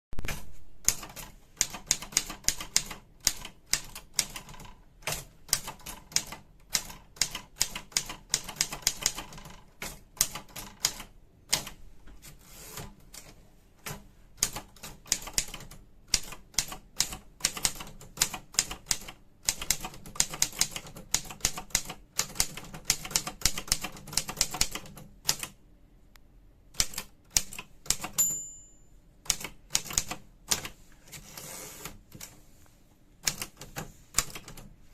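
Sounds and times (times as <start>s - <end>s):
typewriter keystrokes: 0.2s - 11.8s, 12.7s - 25.6s, 26.8s - 28.4s, 29.2s - 31.3s, 33.2s - 34.7s
typewriter end-of-line bell: 28.0s - 28.9s.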